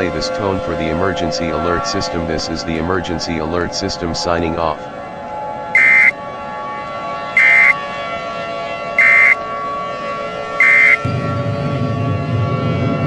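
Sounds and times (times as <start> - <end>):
electronic drone: 0.0 - 13.0
loud high beeps: 5.8 - 6.2, 7.4 - 7.8, 9.0 - 9.4, 10.6 - 11.1.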